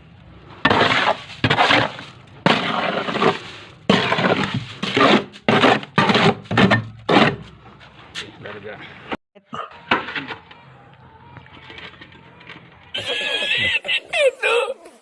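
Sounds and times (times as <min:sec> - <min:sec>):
hard material crashing and breaking: 0:00.6 - 0:07.5.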